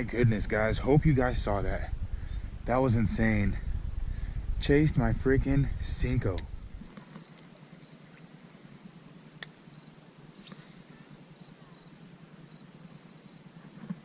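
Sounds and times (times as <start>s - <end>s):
low hiss: 0.0s - 14.0s
sharp click: 6.3s - 7.5s.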